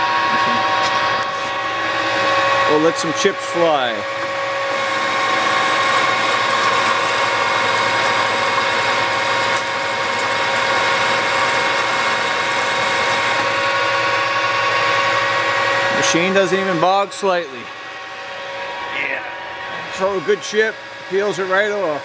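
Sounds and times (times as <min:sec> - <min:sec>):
metal lathe gear whine: 0:00.0 - 0:22.0
cutting tool hissing on metal: 0:04.7 - 0:13.5.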